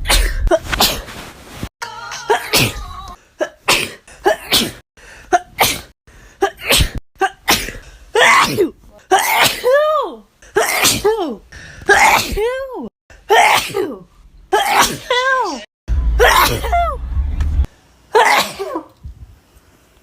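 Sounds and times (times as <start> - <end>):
woman sneezing: 3.4 - 12.6, 13.3 - 14.0, 14.6 - 16.7.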